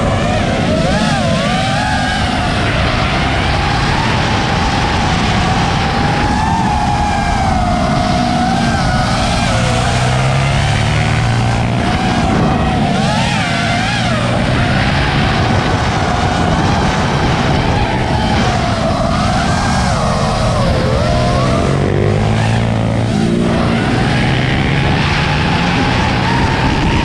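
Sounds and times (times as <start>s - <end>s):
drone motors and propellers whining: 0.0s - 27.0s
droning small engines: 0.0s - 27.0s.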